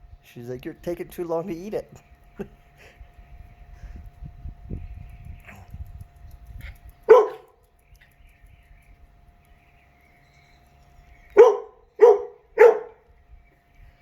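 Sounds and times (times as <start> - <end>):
dog barking: 7.1 - 7.5, 11.4 - 13.0.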